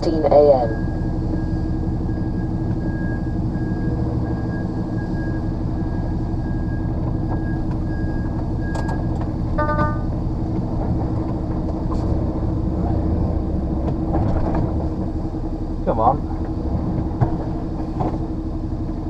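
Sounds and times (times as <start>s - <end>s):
diesel lorry engine running: 0.0s - 19.0s
high pulsing beep: 9.6s - 10.1s.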